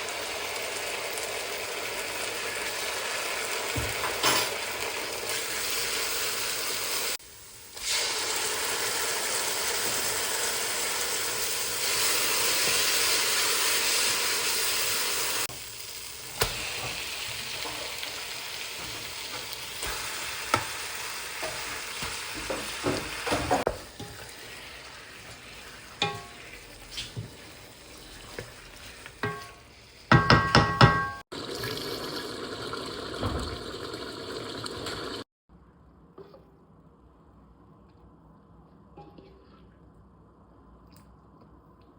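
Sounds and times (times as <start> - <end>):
curry sizzling in a hot pan: 0.0 - 31.1
spoon scraping a pan: 26.0 - 27.3, 28.0 - 31.0.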